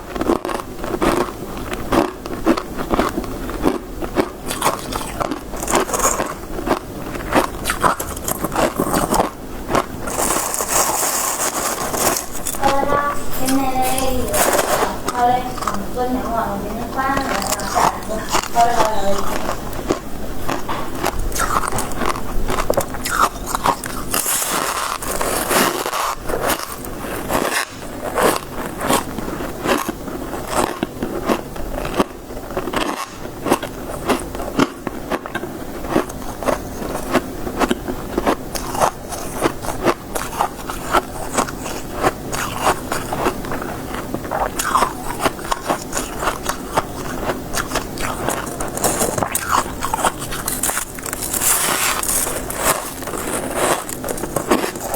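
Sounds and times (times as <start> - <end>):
frost crunching while chewed: 0.0 - 54.9.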